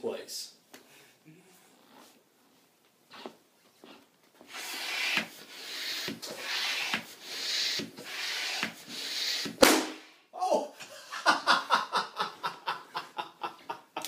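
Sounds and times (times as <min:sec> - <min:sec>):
balloon pump hissing: 0:04.4 - 0:09.7.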